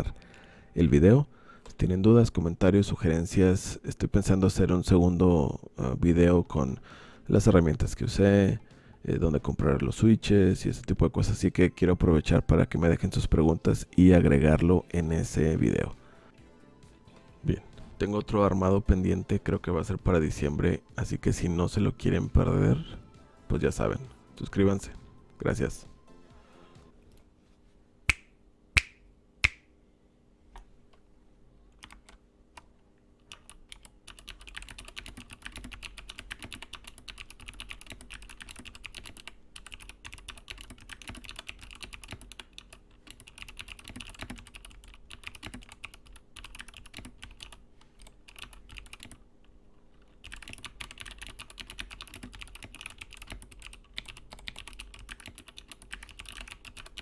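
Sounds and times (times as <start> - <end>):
sharp snaps: 28.1 - 29.7
mechanical keyboard typing: 33.3 - 49.2, 50.2 - 57.0.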